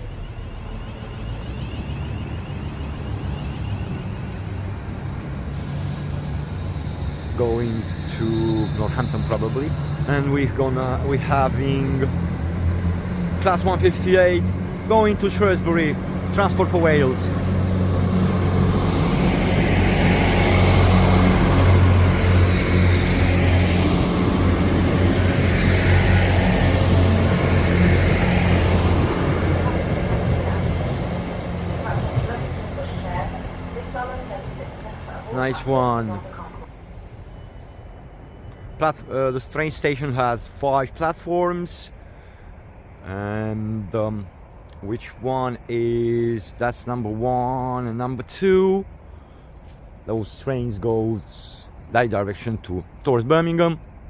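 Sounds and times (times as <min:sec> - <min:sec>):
wavering high whine: 0:00.0 - 0:39.6
train low rumble: 0:00.0 - 0:54.0
hiss: 0:05.4 - 0:08.0.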